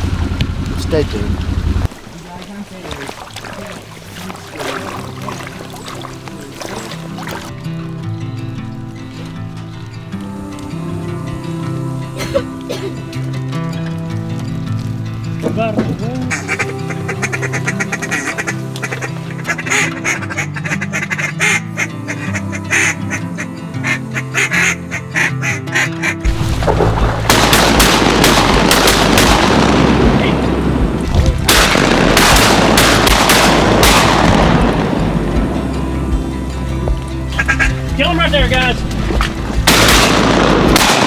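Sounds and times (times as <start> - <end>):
background music: 4.3 - 41.0
duck quacking: 16.2 - 26.3, 37.3 - 40.1
loud steady rushing noise: 26.2 - 41.0.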